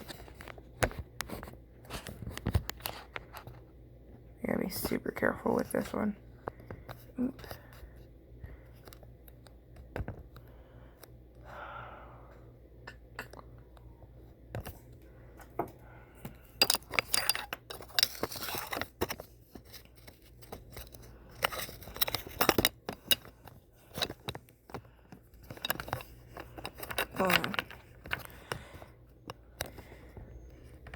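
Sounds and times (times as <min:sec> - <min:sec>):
handling clicks and scrapes: 0:16.2 - 0:30.9.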